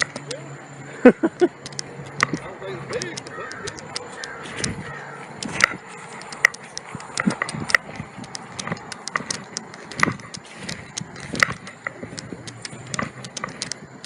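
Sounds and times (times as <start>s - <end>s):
sharp clicks and knocks: 0.0s - 0.4s, 1.3s - 14.0s
steady background hiss: 0.0s - 14.0s.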